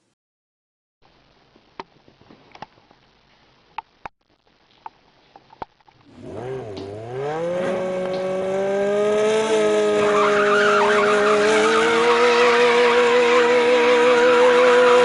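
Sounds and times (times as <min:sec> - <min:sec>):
motor starting up and running: 0:06.1 - 0:10.0.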